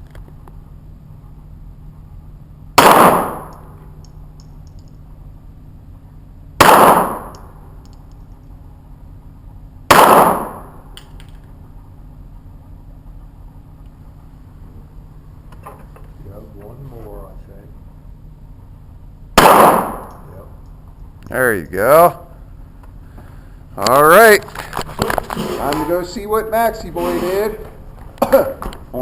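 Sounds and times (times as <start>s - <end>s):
steady low hum: 0.0s - 29.0s
pistol shots: 2.8s - 3.8s, 6.6s - 7.6s, 9.9s - 10.8s, 19.4s - 20.3s.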